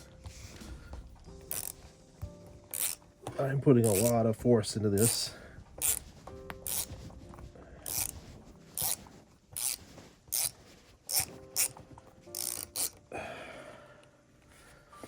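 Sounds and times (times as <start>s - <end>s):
ratchet pawl clicking: 1.5s - 1.8s, 2.7s - 3.0s, 3.8s - 4.1s, 5.8s - 6.0s, 6.6s - 6.9s, 7.9s - 8.1s, 8.8s - 9.0s, 9.6s - 10.5s, 11.1s - 11.7s, 12.4s - 13.0s.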